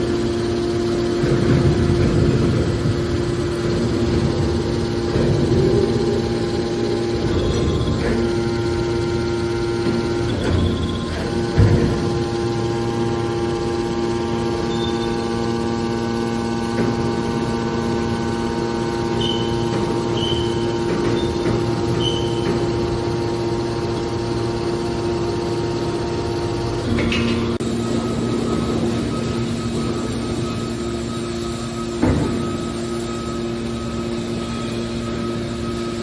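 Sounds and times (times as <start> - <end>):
hydraulic baler motor humming: 0.0 - 36.0
short high squeaks: 19.1 - 22.8.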